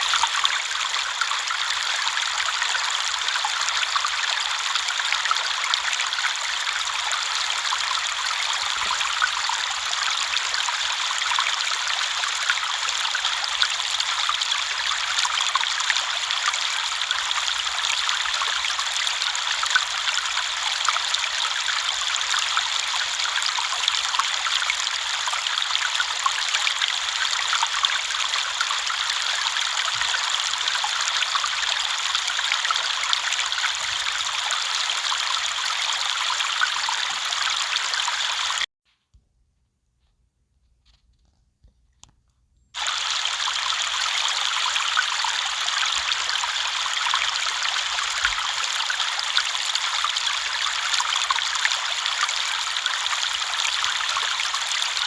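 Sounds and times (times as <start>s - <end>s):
shallow river flowing: 42.8s - 55.0s
small water splashes: 42.8s - 55.0s.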